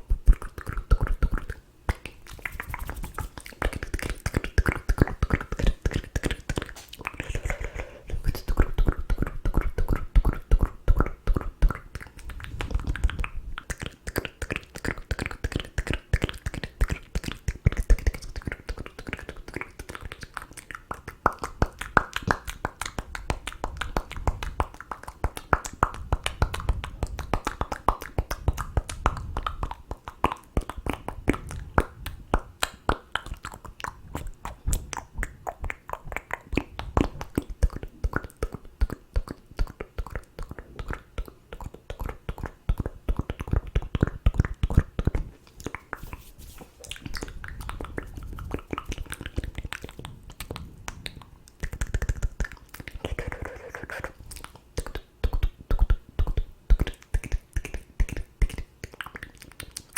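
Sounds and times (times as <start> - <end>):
wet tongue clicks and lip smacks: 46.8 - 59.9.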